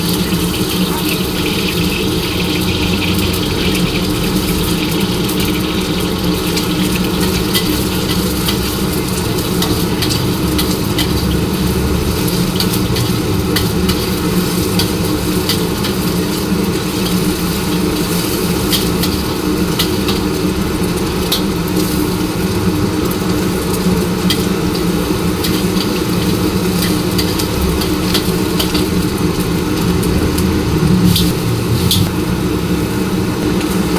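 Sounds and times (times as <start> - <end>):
low mechanical drone: 0.0 - 15.9, 27.0 - 33.9
noodles sizzling in a wok: 0.0 - 33.9.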